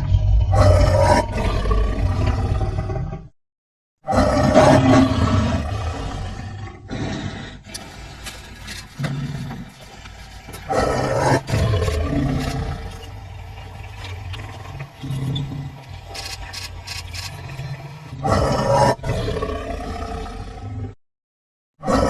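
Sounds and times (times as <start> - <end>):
large animal roaring: 0.0 - 3.4, 4.0 - 8.2, 9.0 - 9.8, 10.6 - 13.5, 14.1 - 16.3, 17.3 - 21.0, 21.8 - 22.0
low rumbling animal calls: 8.6 - 20.9.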